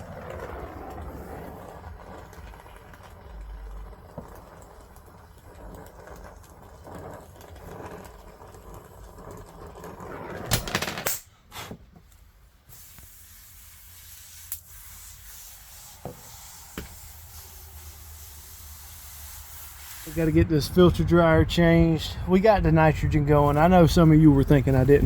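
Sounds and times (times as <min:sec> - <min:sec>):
high hiss of gas flowing: 0:12.7 - 0:20.4.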